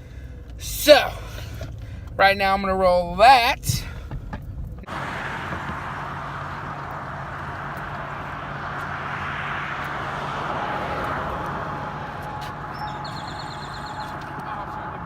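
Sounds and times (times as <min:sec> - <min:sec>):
rushing noise: 0:04.9 - 0:15.0.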